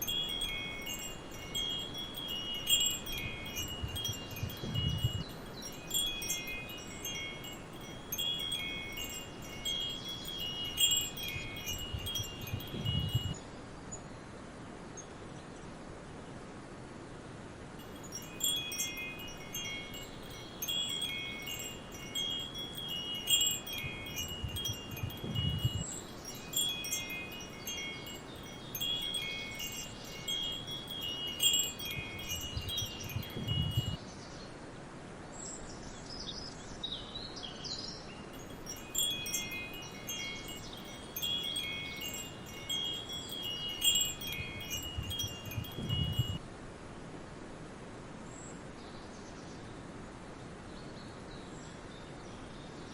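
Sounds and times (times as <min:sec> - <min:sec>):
wind chimes tinkling: 0:00.0 - 0:13.4, 0:17.8 - 0:34.0, 0:38.1 - 0:46.4
forest background hiss: 0:00.0 - 0:52.9.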